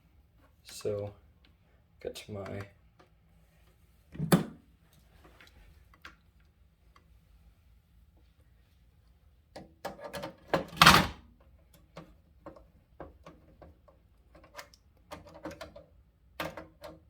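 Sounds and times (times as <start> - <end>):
clicks and knocks of wiring work: 11.7 - 17.0.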